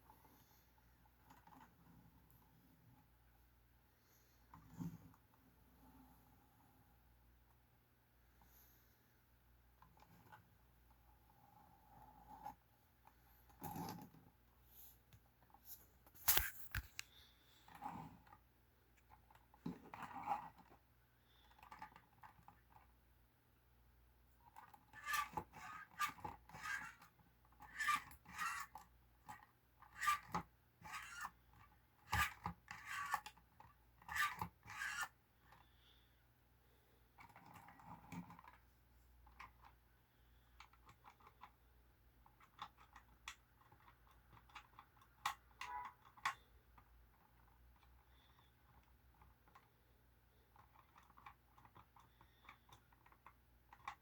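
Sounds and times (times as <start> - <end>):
small parts clicking and scraping: 15.4 - 18.4, 19.0 - 22.9, 24.5 - 35.8, 37.2 - 41.6, 42.2 - 54.0.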